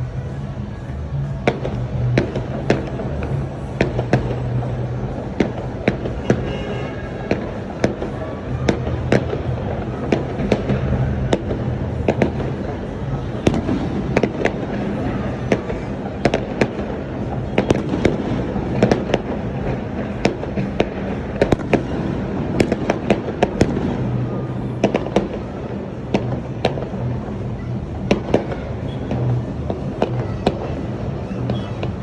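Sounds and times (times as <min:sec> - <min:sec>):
fireworks bangs and pops: 0:01.2 - 0:32.0.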